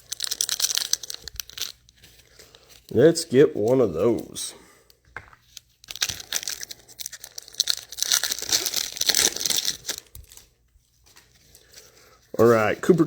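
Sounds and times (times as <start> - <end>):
foil wrapper tearing and crinkling: 0.0 - 3.0, 5.5 - 13.0.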